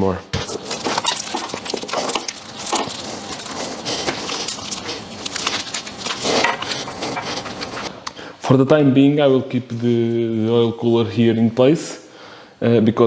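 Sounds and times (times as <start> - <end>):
hand tools clicking and knocking: 0.3 - 7.9.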